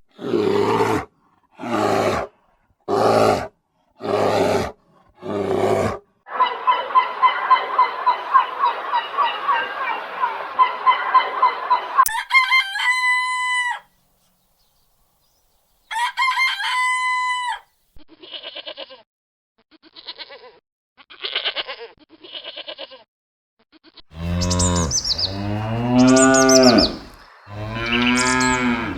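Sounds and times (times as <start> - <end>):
rooster crowing: 6.3 - 13.9, 15.9 - 17.6, 24.2 - 28.9
cow mooing: 24.1 - 28.9
hen clucking: 24.2 - 28.9.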